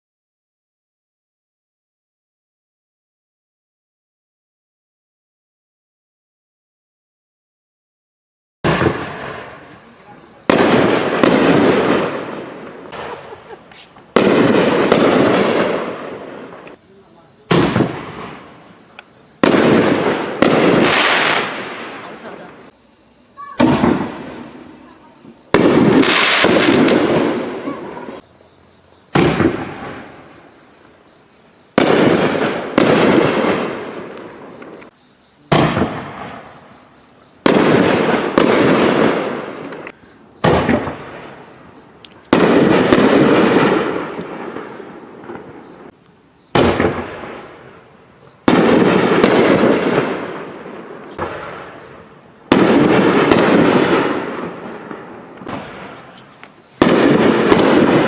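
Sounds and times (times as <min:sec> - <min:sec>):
firework shells bursting: 0:08.7 - 0:16.8, 0:23.3 - 0:28.2, 0:46.5 - 0:47.8, 0:48.4 - 0:58.0.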